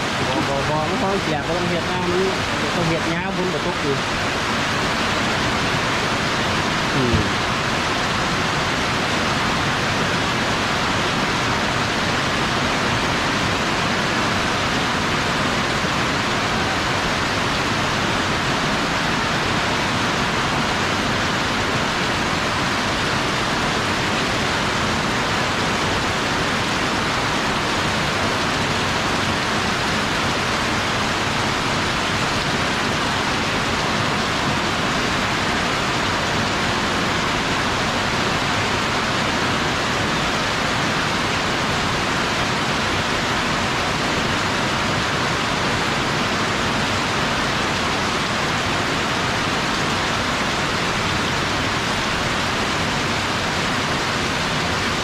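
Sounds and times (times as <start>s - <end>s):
heavy rain pouring: 0.0s - 55.0s.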